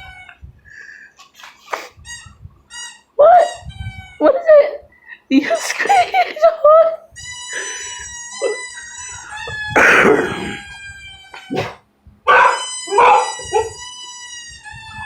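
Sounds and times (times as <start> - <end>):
dog whining: 7.2 - 15.0
dog barking: 11.5 - 13.8.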